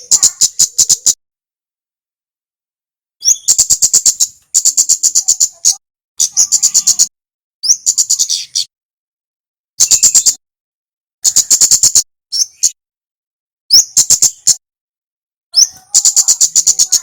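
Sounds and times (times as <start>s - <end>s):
songbird singing: 0.0s - 1.2s, 3.2s - 8.7s, 9.8s - 10.4s, 11.2s - 12.8s, 13.7s - 14.6s, 15.5s - 17.0s.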